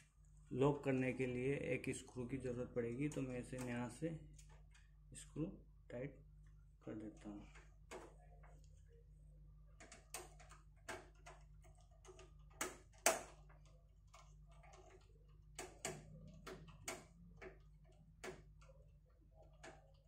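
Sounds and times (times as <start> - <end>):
faint low hum: 0.0 - 20.0
screwdriver clicking on metal parts: 9.8 - 20.0.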